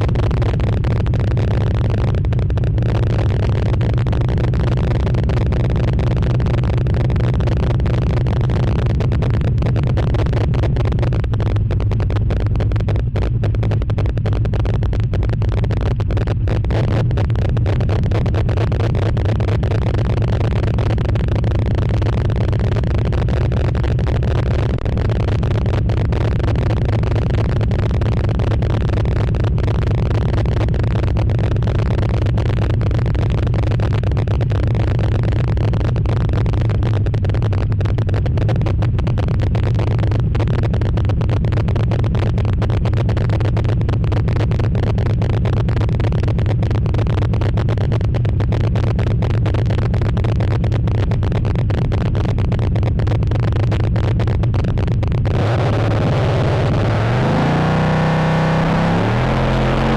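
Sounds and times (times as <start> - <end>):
engine running steadily: 0.0 - 59.9.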